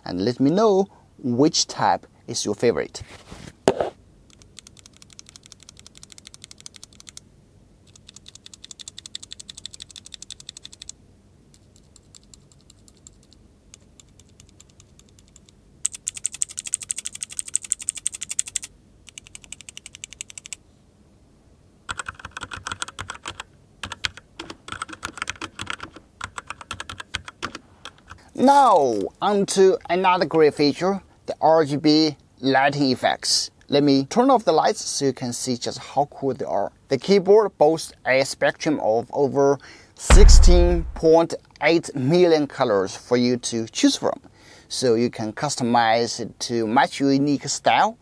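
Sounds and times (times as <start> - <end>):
mechanical key switches pressed rapidly: 4.3 - 7.2, 7.9 - 11.0, 11.6 - 20.6, 21.9 - 28.1, 40.1 - 41.0.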